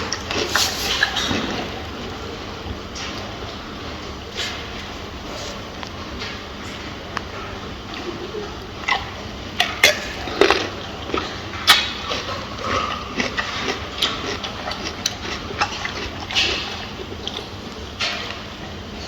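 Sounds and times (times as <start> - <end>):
gorilla chewing and crunching food: 0.0 - 19.0.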